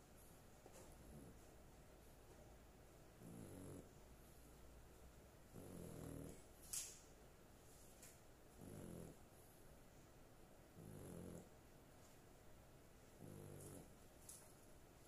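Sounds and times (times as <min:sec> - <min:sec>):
dog snoring: 0:01.0 - 0:01.4, 0:03.2 - 0:04.0, 0:05.5 - 0:06.5, 0:08.5 - 0:09.2, 0:10.7 - 0:11.5, 0:13.2 - 0:14.0.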